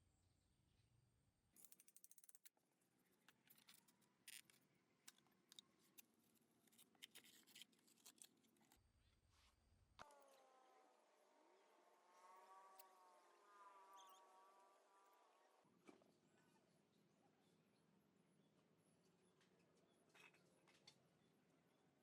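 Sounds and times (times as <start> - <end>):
faint scratching and scraping: 1.6 - 16.8.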